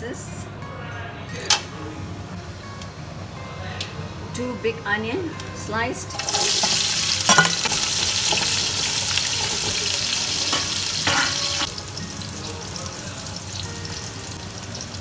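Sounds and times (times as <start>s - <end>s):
onions sizzling in hot oil: 1.6s - 15.0s
spoon knocking in pan: 6.1s - 11.9s.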